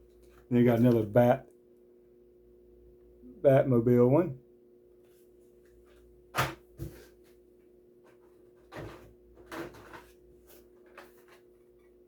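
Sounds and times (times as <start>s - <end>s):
faint steady hum: 0.0s - 12.0s
cardboard and plastic rustling: 5.1s - 12.0s.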